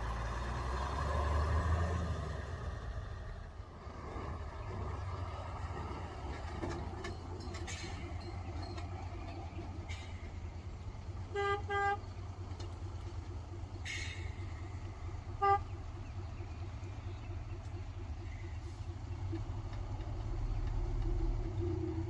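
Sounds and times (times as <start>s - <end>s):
heavy engine rumbling: 0.0s - 22.0s
vehicle horn toots: 11.3s - 12.1s, 15.3s - 15.8s.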